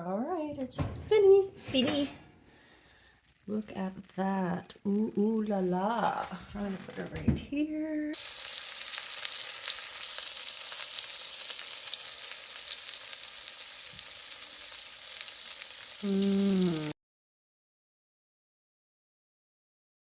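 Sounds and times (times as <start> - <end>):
chicken sizzling in a skillet: 8.1 - 17.0.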